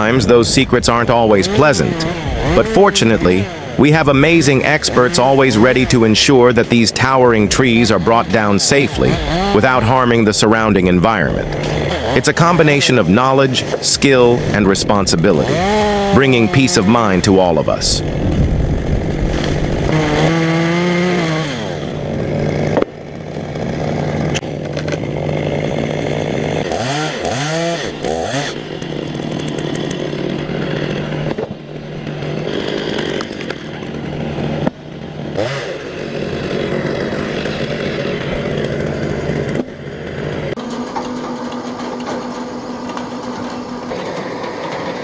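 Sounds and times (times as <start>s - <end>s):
chainsaw revving: 0.0s - 45.0s.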